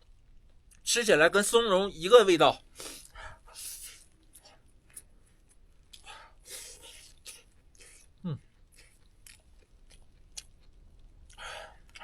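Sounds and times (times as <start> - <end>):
person chewing: 4.9 - 12.0.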